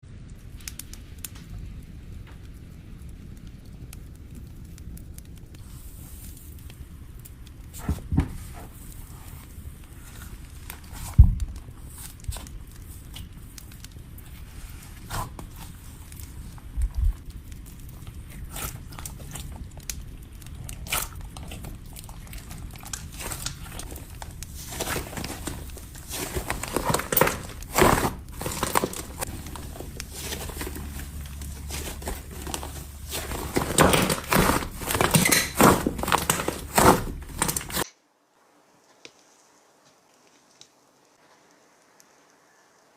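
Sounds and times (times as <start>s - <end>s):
slime sticky pops and crackles: 10.0s - 37.9s.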